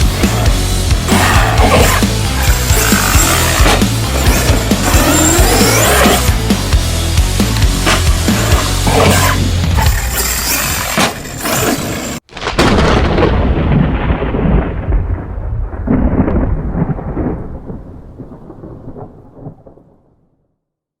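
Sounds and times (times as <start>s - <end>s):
thunder crack rolling: 0.0s - 9.8s, 12.3s - 20.2s
loud dense noise: 0.0s - 10.0s.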